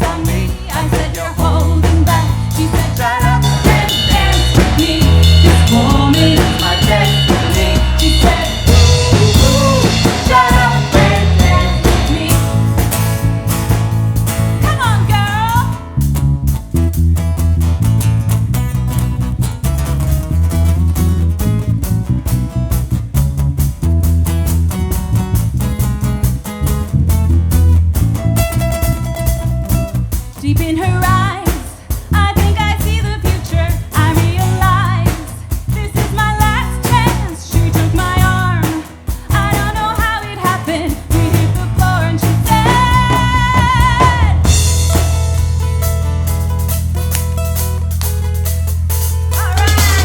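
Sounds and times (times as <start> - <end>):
person singing: 0.0 - 12.9, 30.6 - 44.6, 49.4 - 50.0
pop-rock song with band: 0.0 - 50.0.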